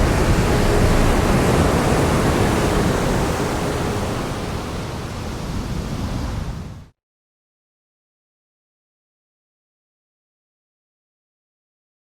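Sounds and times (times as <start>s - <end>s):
faint sustained tones: 0.0s - 5.7s
steady rushing noise: 0.0s - 6.7s.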